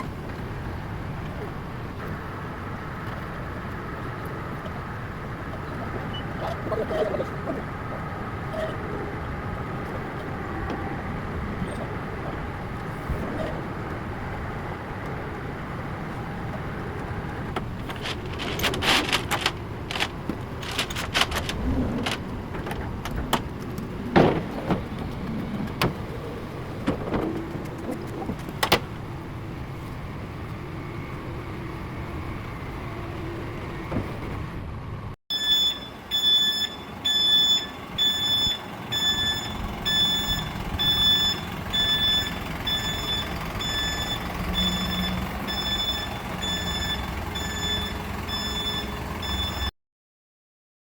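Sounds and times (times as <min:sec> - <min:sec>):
reversing alarm beeping: 0:35.3 - 0:49.7
forklift engine running: 0:35.4 - 0:49.7.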